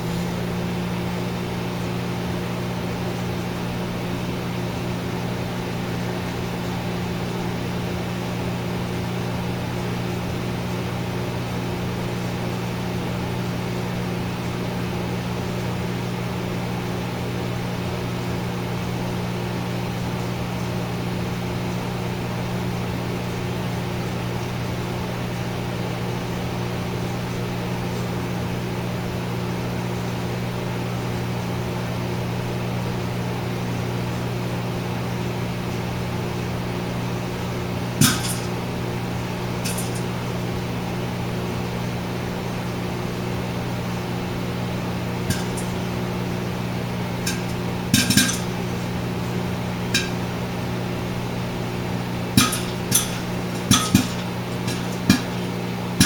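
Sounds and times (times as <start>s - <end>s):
microwave oven humming: 0.0s - 56.0s
popcorn popping: 38.0s - 40.3s, 45.2s - 50.5s, 52.3s - 56.0s.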